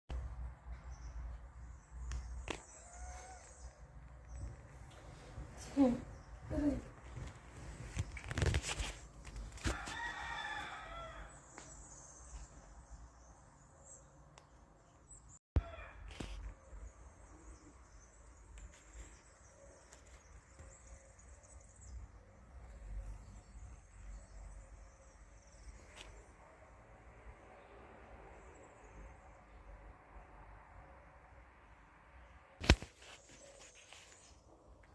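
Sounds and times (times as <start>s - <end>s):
cat meowing: 2.7s - 3.7s.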